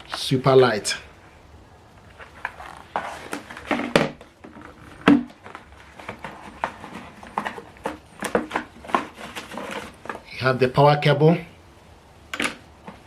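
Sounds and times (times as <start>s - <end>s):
packaging knocks and rustles: 2.1s - 10.3s.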